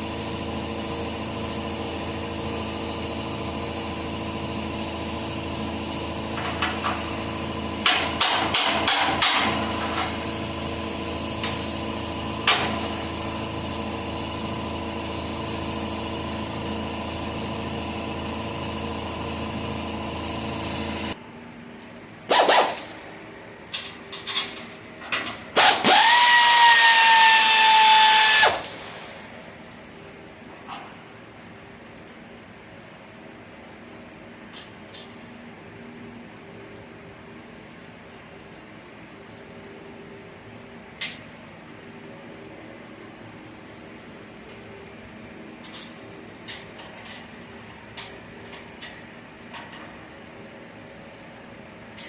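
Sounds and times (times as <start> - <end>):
power tool whine: 0.0 - 21.2, 25.6 - 28.8
machine hum: 0.0 - 32.4.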